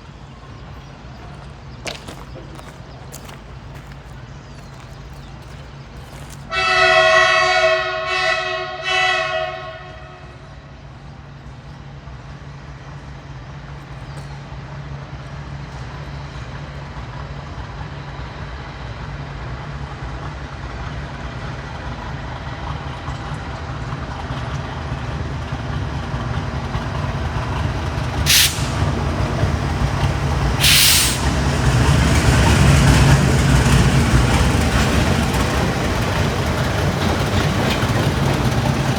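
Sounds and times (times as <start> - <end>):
train rumble: 0.0 - 38.9
train horn blasts: 6.5 - 10.7, 28.3 - 29.2, 30.6 - 31.7
short sharp hisses: 28.3 - 29.2, 30.6 - 31.7.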